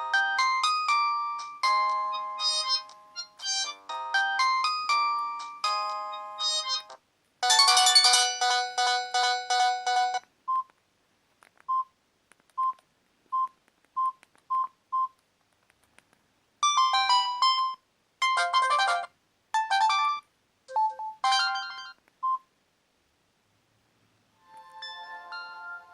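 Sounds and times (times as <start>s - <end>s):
electronic ringtone tune: 0.0s - 10.2s, 16.6s - 22.0s, 24.5s - 25.9s
melodic ringtone: 0.0s - 10.2s, 16.6s - 22.0s, 24.4s - 25.9s.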